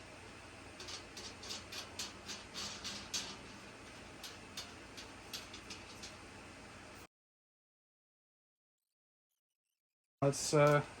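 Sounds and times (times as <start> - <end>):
light clicks and scrapes: 0.8 - 7.0.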